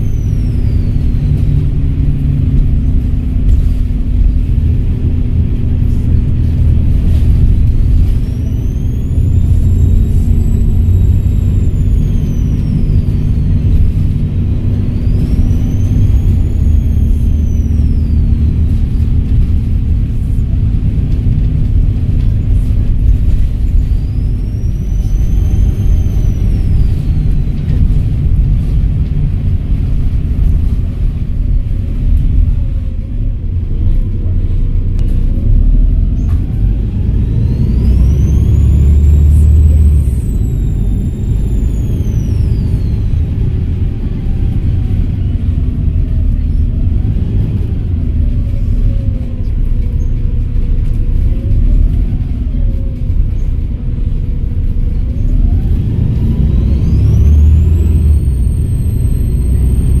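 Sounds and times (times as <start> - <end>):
turbocharger whistling: 0.0 - 21.1, 21.8 - 31.1, 35.5 - 60.0
bus diesel engine under load: 0.0 - 60.0.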